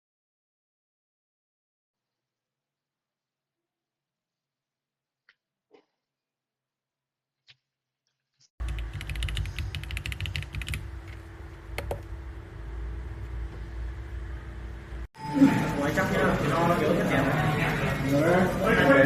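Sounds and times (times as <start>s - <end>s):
mechanical keyboard typing: 8.6s - 11.2s.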